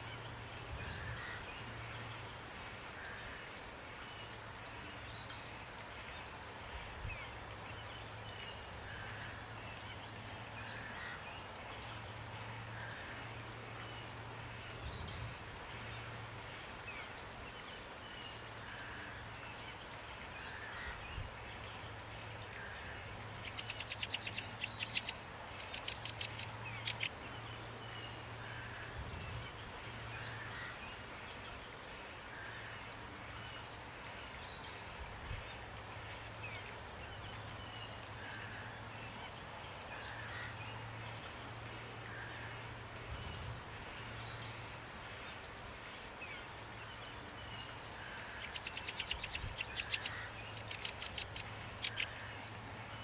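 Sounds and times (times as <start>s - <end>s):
rain hiss: 0.0s - 53.0s
small birds chirping: 12.7s - 31.4s, 32.3s - 53.0s.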